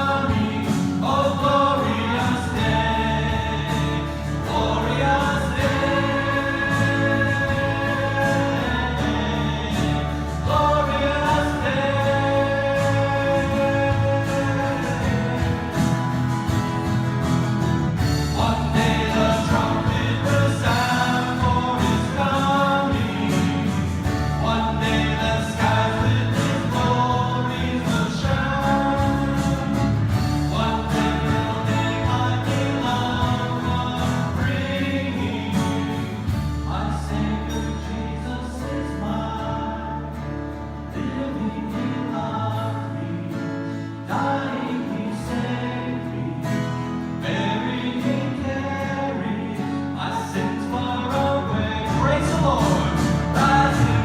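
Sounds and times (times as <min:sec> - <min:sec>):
group singing worship song: 0:00.0 - 0:54.0.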